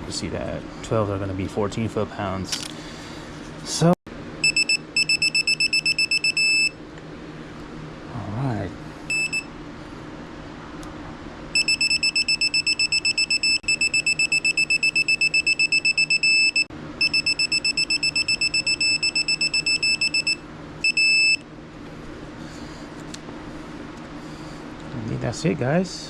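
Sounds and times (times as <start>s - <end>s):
torque wrench beeping rapidly: 4.4s - 6.7s, 11.6s - 21.4s.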